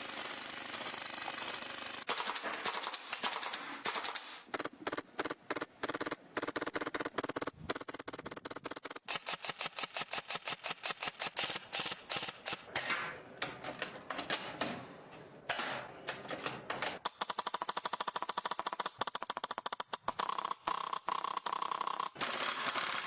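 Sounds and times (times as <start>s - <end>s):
airsoft gun firing: 0.8s - 7.4s.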